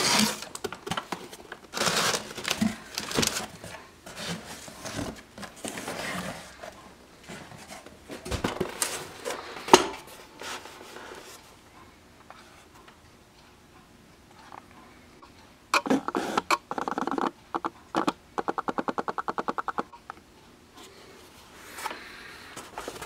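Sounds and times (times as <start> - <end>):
rustling and rubbing of packaging: 0.0 - 11.5, 22.6 - 23.0.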